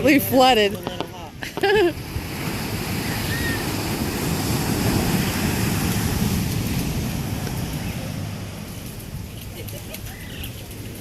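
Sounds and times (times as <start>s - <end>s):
ocean waves breaking on shore: 0.0s - 11.0s
wind on microphone: 0.0s - 11.0s.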